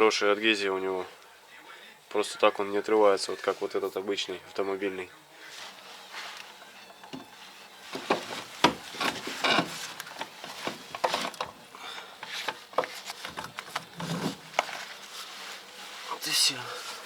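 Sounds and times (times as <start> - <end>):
heavy metal part knocking and scraping: 8.0 - 11.6.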